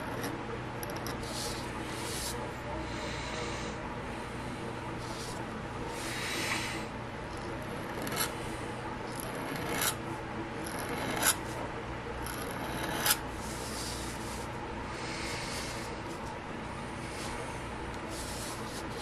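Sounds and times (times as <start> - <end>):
pen scratching on paper: 0.0 - 2.4, 5.0 - 5.4, 7.4 - 8.4, 9.1 - 10.0, 10.6 - 11.6, 12.2 - 14.5, 18.1 - 19.0.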